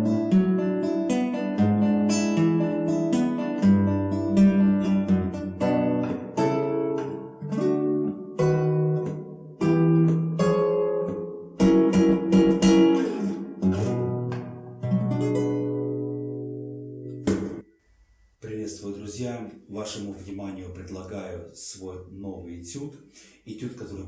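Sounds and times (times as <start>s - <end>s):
fingerpicked acoustic guitar: 0.0s - 18.3s.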